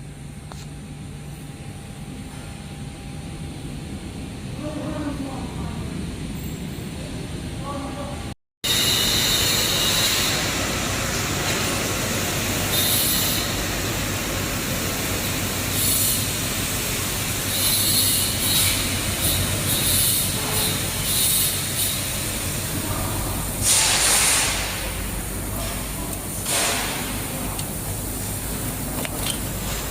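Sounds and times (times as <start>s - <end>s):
machine and shop noise: 8.6s - 29.9s
laser welder hissing bursts: 15.4s - 29.9s.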